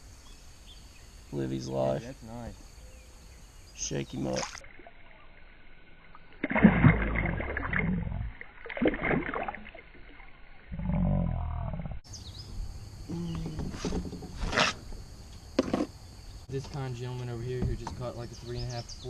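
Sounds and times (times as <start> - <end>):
water splashing and sloshing: 4.1 - 10.7
microphone handling noise: 13.1 - 15.9
light knocks: 17.6 - 18.2.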